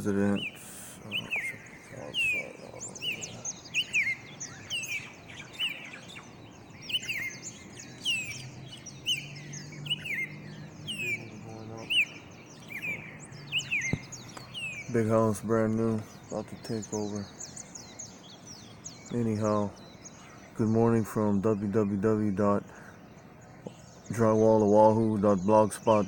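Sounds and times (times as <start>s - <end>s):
songbirds chirping: 0.0s - 26.0s.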